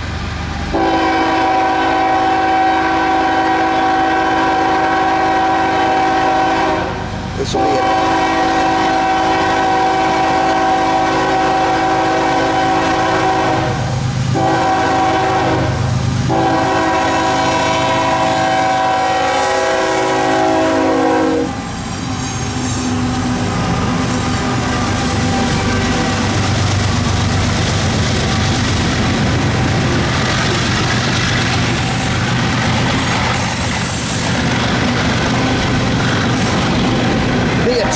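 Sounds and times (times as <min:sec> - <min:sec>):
diesel locomotives working: 0:00.0 - 0:37.9
train rumbling on rails: 0:00.0 - 0:37.9
train air horn blasts: 0:00.7 - 0:26.5.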